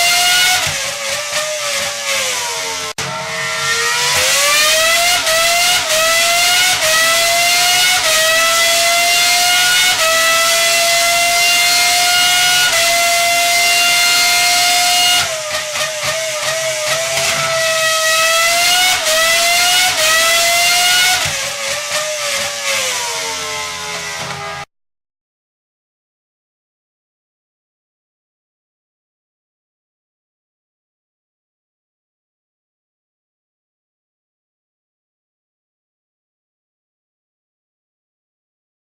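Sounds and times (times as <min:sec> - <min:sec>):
high-revving engine whining: 0:00.0 - 0:24.7.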